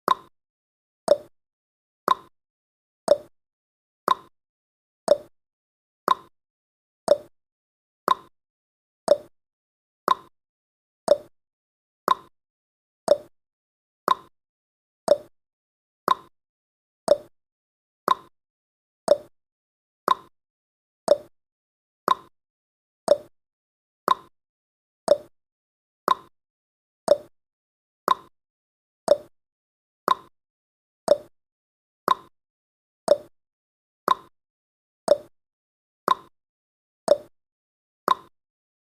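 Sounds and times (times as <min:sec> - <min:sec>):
timer ticking: 0:00.1 - 0:00.3, 0:01.1 - 0:01.3, 0:02.1 - 0:02.3, 0:03.1 - 0:03.3, 0:04.1 - 0:04.3, 0:05.1 - 0:05.3, 0:06.1 - 0:06.3, 0:07.1 - 0:07.3, 0:09.1 - 0:09.3, 0:10.1 - 0:10.3, 0:11.1 - 0:11.3, 0:13.1 - 0:13.3, 0:14.1 - 0:14.3, 0:15.1 - 0:15.3, 0:16.1 - 0:16.3, 0:17.1 - 0:17.3, 0:18.1 - 0:18.3, 0:19.1 - 0:19.3, 0:20.1 - 0:20.3, 0:21.1 - 0:21.3, 0:23.1 - 0:23.3, 0:25.1 - 0:25.3, 0:27.1 - 0:27.3, 0:29.1 - 0:29.3, 0:31.1 - 0:31.3, 0:33.1 - 0:33.3, 0:34.1 - 0:34.3, 0:35.1 - 0:35.3, 0:36.1 - 0:36.3, 0:37.1 - 0:37.3, 0:38.1 - 0:38.3.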